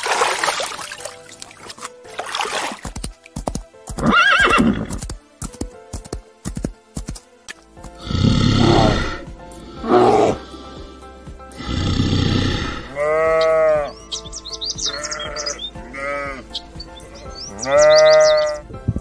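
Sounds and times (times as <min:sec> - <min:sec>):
background music: 0:00.0 - 0:19.0
farm animal bleating: 0:11.7 - 0:18.7.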